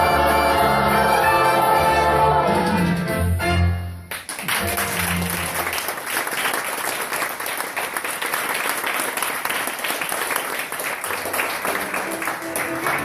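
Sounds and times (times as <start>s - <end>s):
audience applauding: 4.1s - 13.0s.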